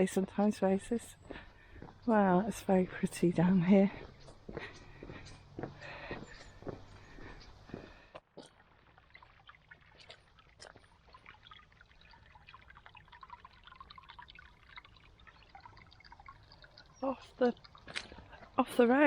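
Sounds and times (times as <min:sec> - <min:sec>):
small drips and splashes: 0:08.3 - 0:19.0
faint trickle of water: 0:08.4 - 0:19.0.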